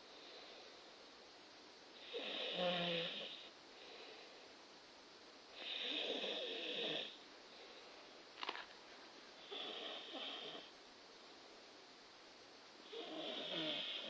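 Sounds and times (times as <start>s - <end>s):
person snoring: 2.0s - 3.5s, 9.4s - 10.7s, 12.9s - 14.0s.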